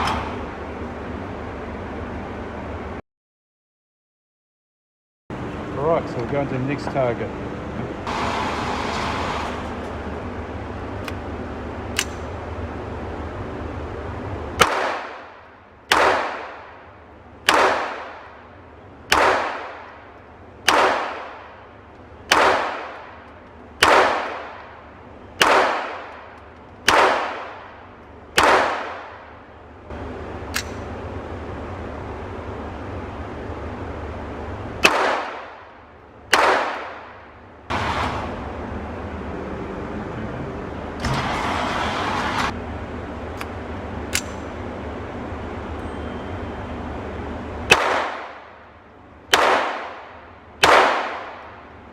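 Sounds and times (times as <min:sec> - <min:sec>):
pistol shots with echo: 0:14.6 - 0:16.8, 0:17.4 - 0:18.4, 0:19.1 - 0:20.0, 0:20.6 - 0:21.6, 0:22.3 - 0:23.2, 0:23.8 - 0:24.8, 0:25.4 - 0:27.8, 0:28.4 - 0:29.4, 0:34.8 - 0:35.7, 0:36.3 - 0:37.2, 0:47.7 - 0:48.6, 0:49.3 - 0:51.6
faint distant gunshots: 0:23.8 - 0:24.7.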